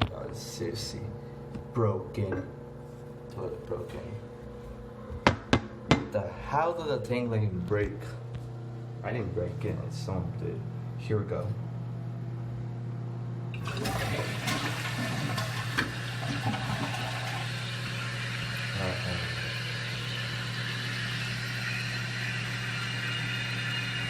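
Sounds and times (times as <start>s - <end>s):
toilet flushing: 13.5s - 24.0s.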